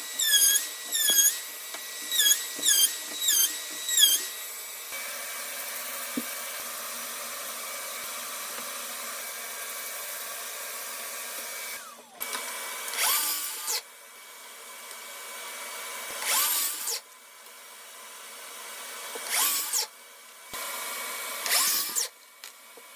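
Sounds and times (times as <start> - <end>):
power drill whining: 0.0 - 17.1, 17.7 - 22.9.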